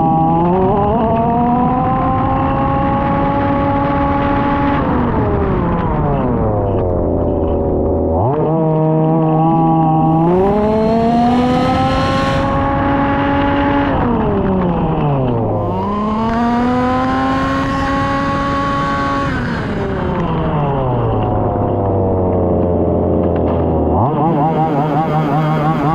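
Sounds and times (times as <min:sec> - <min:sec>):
two-stroke engine revving: 0:00.0 - 0:25.9.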